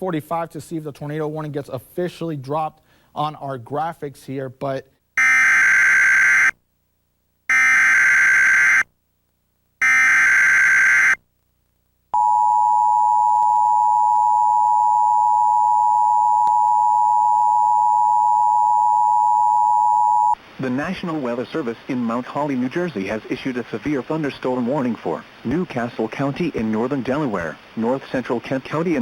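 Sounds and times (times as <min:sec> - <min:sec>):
screechy data bursts: 0:09.8 - 0:11.2.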